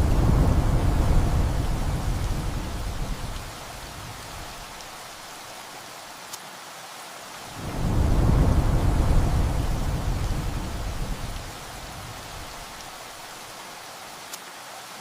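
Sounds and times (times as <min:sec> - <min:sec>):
thunder rumbling: 0:00.0 - 0:04.8, 0:07.5 - 0:12.9
heavy rain falling: 0:00.0 - 0:15.0.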